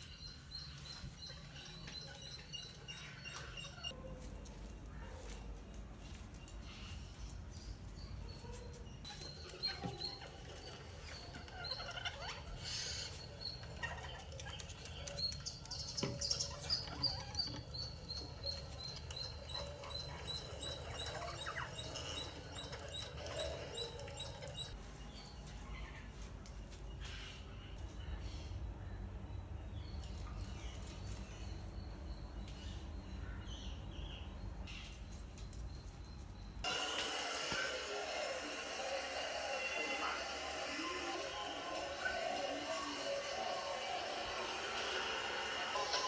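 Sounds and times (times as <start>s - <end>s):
parrot chirping: 8.0s - 24.8s.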